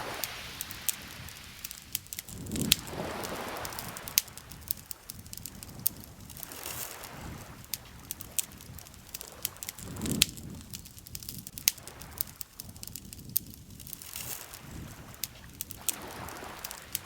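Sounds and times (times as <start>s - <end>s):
campfire crackling: 0.0s - 17.0s
sharp pops and snaps of fire: 0.0s - 17.0s.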